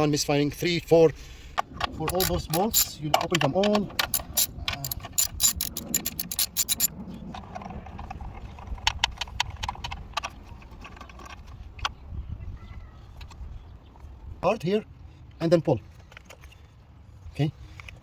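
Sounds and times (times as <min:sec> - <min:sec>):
ratchet wrench clicking: 0:02.1 - 0:03.0, 0:04.0 - 0:06.9.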